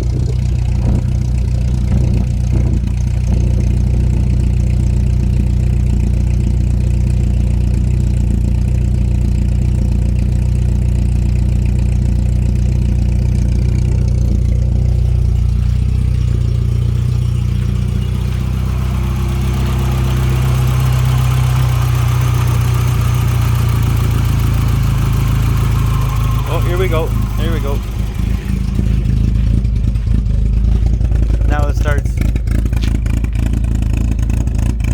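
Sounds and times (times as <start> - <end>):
car engine idling: 0.0 - 34.9.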